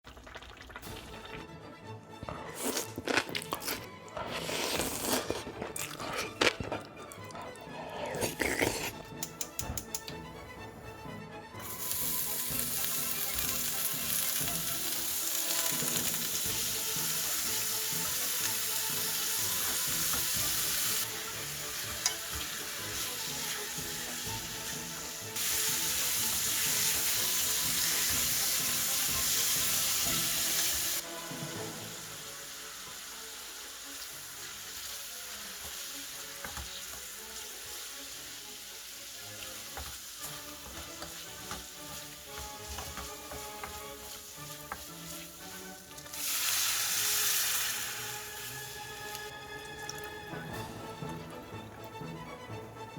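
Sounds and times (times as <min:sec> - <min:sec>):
food sizzling in a hot pan: 0:11.6 - 0:50.0.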